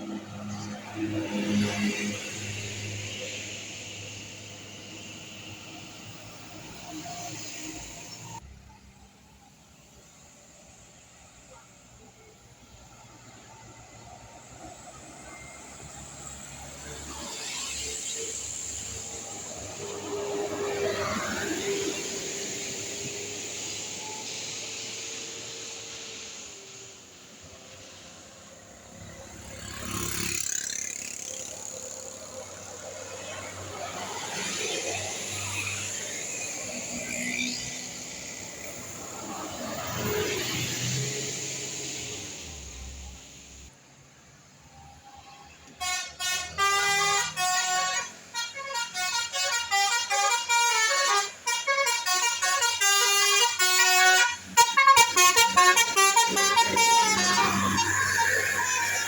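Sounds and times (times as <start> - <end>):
vehicle passing close by: 0.0 - 8.4, 14.9 - 26.4, 28.0 - 43.7
multi-tone bus horn melody: 45.7 - 59.0.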